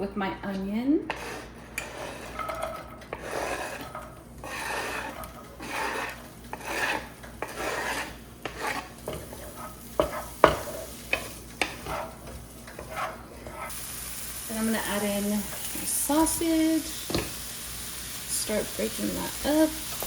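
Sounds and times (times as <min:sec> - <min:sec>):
utensil scraping a pan: 0:01.0 - 0:13.8.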